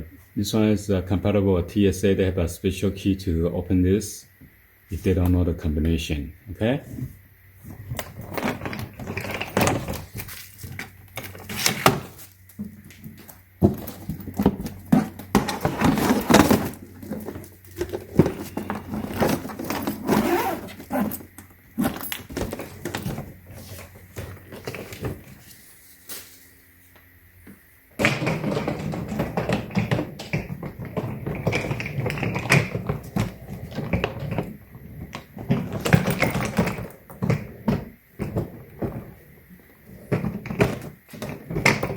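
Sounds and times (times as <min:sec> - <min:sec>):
suitcase knocks and clicks: 0:07.8 - 0:25.3, 0:28.0 - 0:39.2.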